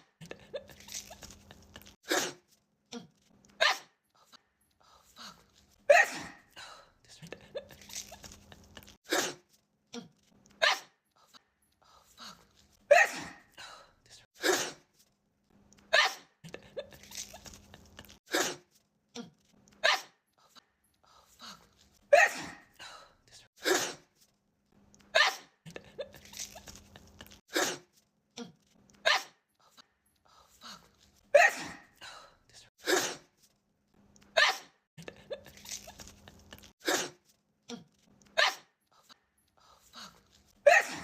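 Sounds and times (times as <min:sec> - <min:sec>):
woman sneezing: 0:05.9 - 0:06.4, 0:09.1 - 0:09.4, 0:12.9 - 0:13.5, 0:14.4 - 0:14.8, 0:22.1 - 0:22.7, 0:23.6 - 0:24.1, 0:31.3 - 0:31.9, 0:32.8 - 0:33.3, 0:36.8 - 0:37.2, 0:40.6 - 0:41.0.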